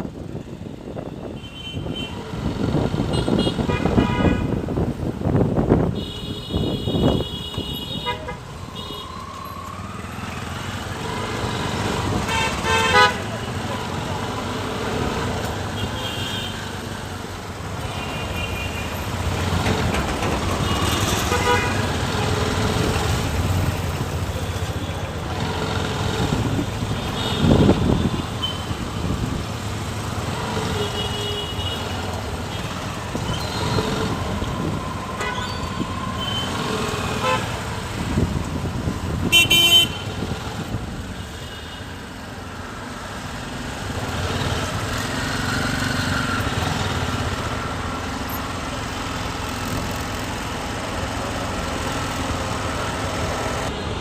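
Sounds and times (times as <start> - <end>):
rumble of vehicle engines and tyres: 0.0 - 54.0
car horn toots: 39.3 - 40.1.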